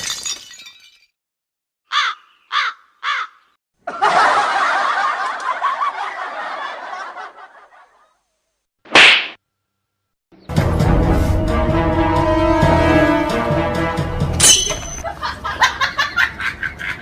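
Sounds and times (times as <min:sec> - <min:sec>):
crowd laughing together: 0:03.8 - 0:08.2, 0:15.0 - 0:17.0.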